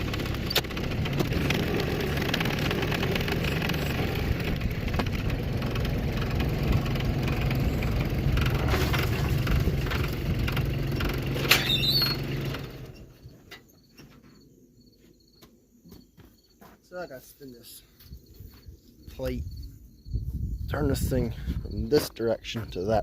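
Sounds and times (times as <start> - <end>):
skid loader engine running: 0.0 - 13.6
short sharp squeal: 11.4 - 12.3
crickets chirping: 13.0 - 22.9.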